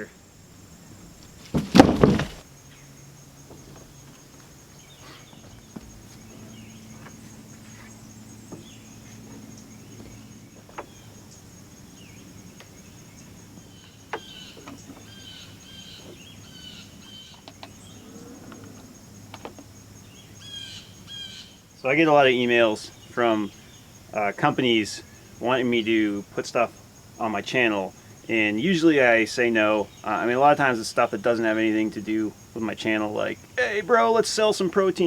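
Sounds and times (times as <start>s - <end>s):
high insect drone: 0.0s - 35.0s
loud thump: 1.4s - 2.4s.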